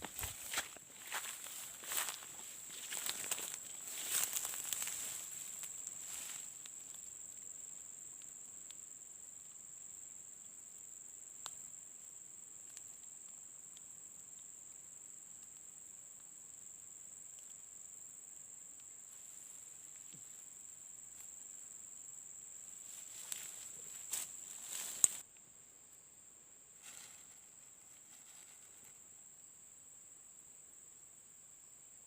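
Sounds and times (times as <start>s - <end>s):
insects shrilling: 0.0s - 8.2s, 22.6s - 25.2s, 26.8s - 29.2s.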